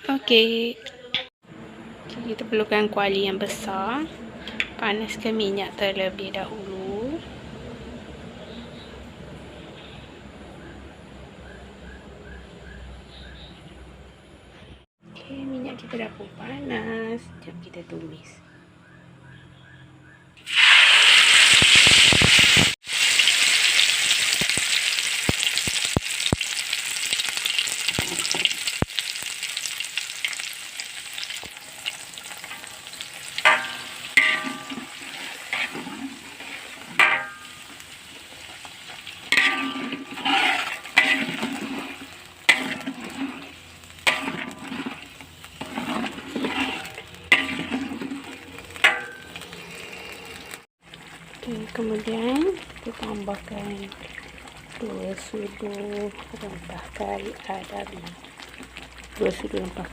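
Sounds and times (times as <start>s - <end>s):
spatula scraping a wok: 20.4s - 26.3s, 27.6s - 50.6s
paste sizzling in hot oil: 20.4s - 59.9s.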